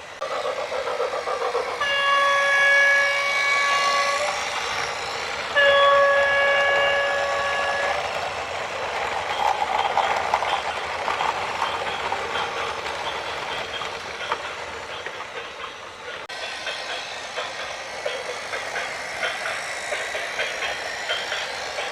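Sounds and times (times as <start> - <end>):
train rattling past: 0.0 - 21.9
train horn blast: 1.8 - 4.4, 5.5 - 8.0.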